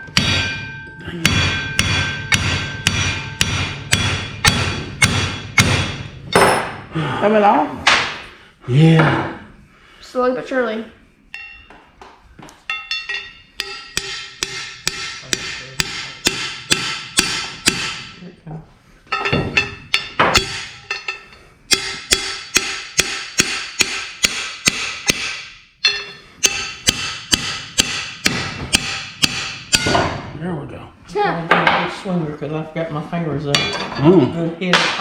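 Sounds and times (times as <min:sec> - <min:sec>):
hammer ringing on steel: 0:00.0 - 0:06.8, 0:11.4 - 0:11.8, 0:12.7 - 0:18.2, 0:19.1 - 0:30.3.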